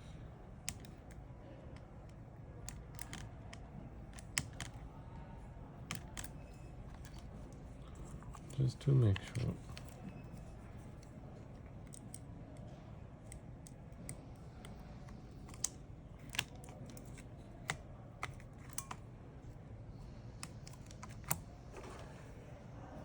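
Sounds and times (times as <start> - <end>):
faint low hum: 0.0 - 23.0
tools clicking and tapping: 0.6 - 1.2, 2.0 - 4.9, 5.9 - 19.0.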